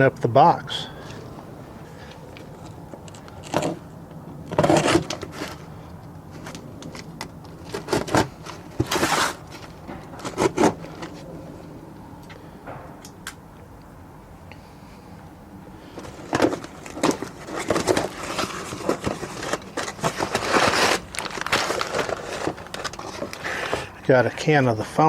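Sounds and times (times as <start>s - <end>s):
cardboard tearing and rustling: 4.5s - 5.7s, 6.4s - 11.2s, 16.0s - 24.0s.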